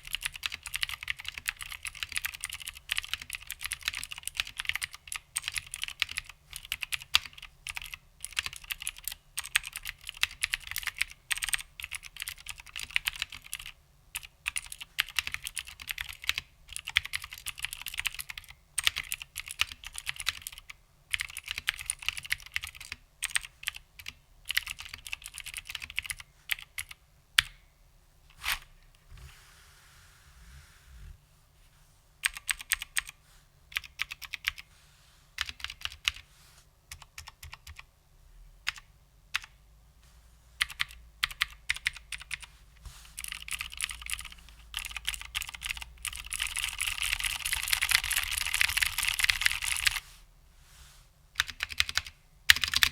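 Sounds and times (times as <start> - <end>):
clicky keyboard typing: 0.0 - 27.6, 32.2 - 34.6, 36.9 - 37.9, 40.6 - 42.5, 43.2 - 50.0, 51.4 - 52.9.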